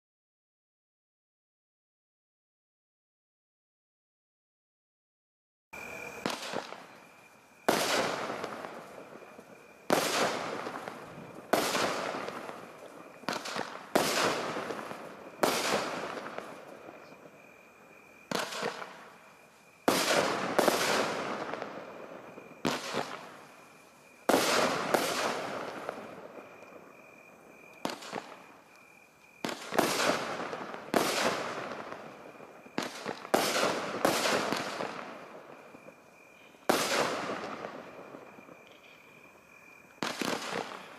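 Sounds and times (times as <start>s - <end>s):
fireworks banging: 5.8s - 17.4s, 18.2s - 23.6s, 24.2s - 26.7s, 27.8s - 28.6s, 29.4s - 36.0s, 36.6s - 39.0s, 40.0s - 40.9s.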